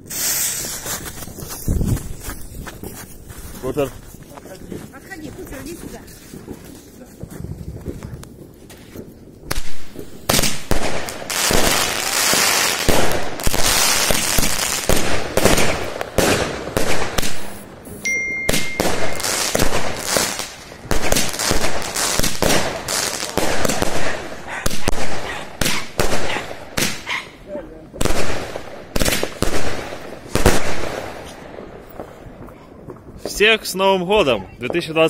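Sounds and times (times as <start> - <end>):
fireworks hissing: 0.0 - 1.8, 8.7 - 26.2
fireworks bangs and crackling: 0.0 - 35.0.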